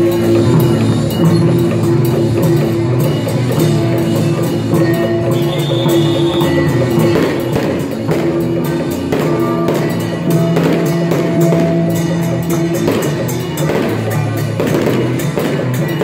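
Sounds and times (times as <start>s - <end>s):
sustained held notes: 0.0s - 7.6s
drums and rapid percussion: 0.0s - 16.0s.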